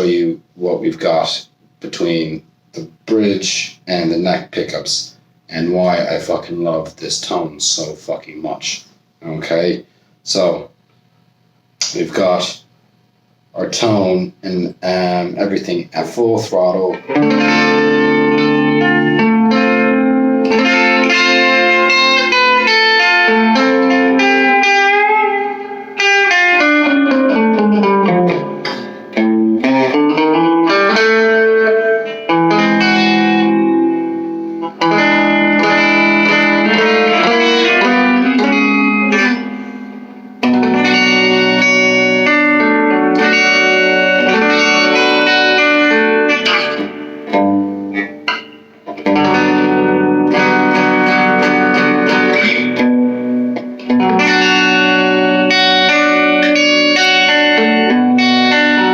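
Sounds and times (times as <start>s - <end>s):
electric guitar notes and chords: 16.6s - 58.9s.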